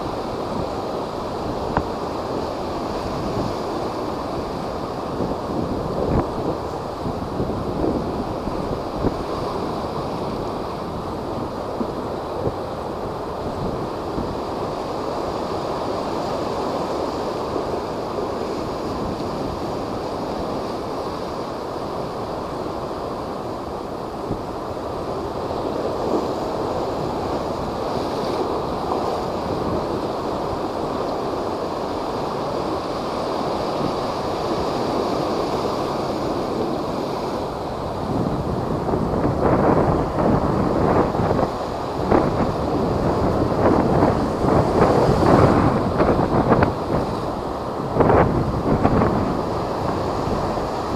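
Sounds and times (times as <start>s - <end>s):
high waves breaking: 0.0s - 50.9s
wind buffeting microphone: 0.0s - 50.9s.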